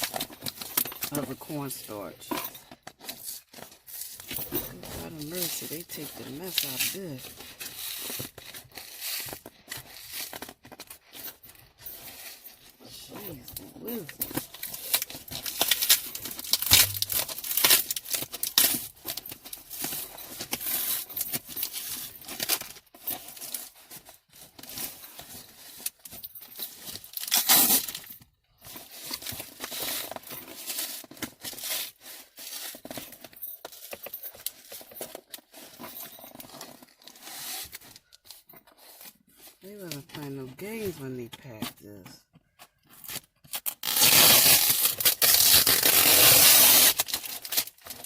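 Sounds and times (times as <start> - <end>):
packing material crinkling: 13.8 - 26.0, 43.0 - 48.0
packing tape and cardboard ripping: 13.9 - 23.7, 26.7 - 28.2, 28.8 - 33.0, 43.0 - 48.0.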